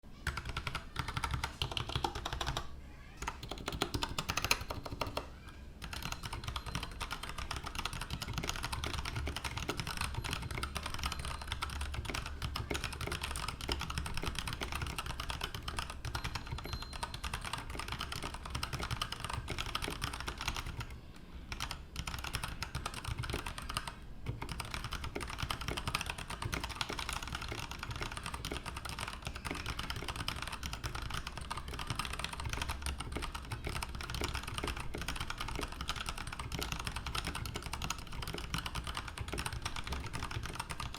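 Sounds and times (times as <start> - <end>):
mechanical keyboard typing: 0.2 - 40.9.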